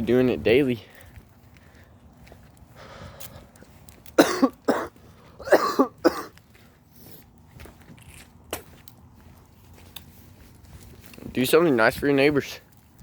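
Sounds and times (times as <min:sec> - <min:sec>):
person coughing: 0:04.2 - 0:06.4.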